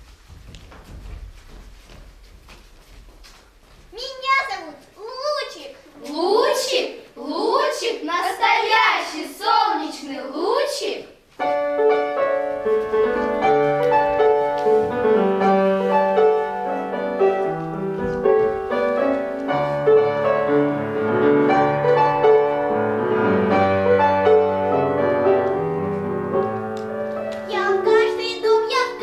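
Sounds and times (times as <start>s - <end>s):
piano music: 11.4s - 29.0s.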